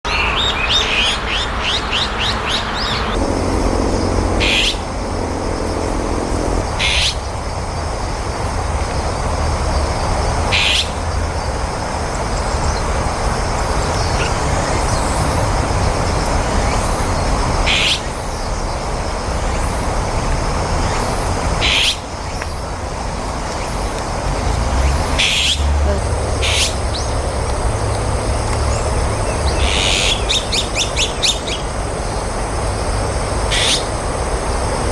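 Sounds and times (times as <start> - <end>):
outdoor background noise: 0.0 - 34.9
magpie calls: 3.3 - 7.2.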